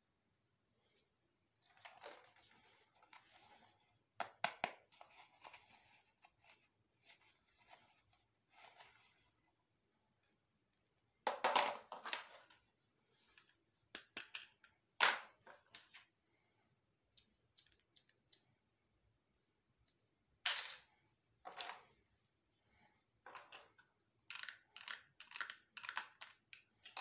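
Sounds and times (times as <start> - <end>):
plastic pieces clicking and tapping: 13.9 - 15.9, 23.3 - 27.0.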